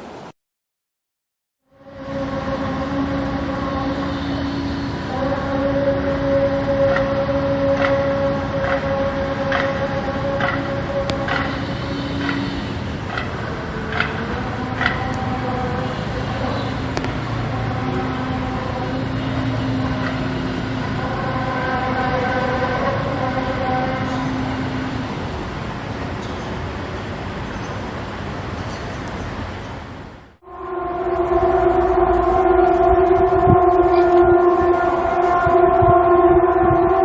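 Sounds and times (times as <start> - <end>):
steady droning tones: 1.6 - 29.6, 30.2 - 37.0
continuous low rumble: 1.7 - 37.0.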